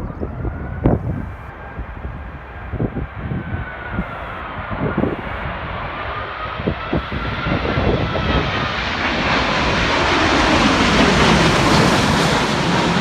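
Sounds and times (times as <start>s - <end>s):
faint whine: 0.0s - 7.4s
jet engines roaring: 0.0s - 13.0s
wind buffeting microphone: 0.0s - 13.0s.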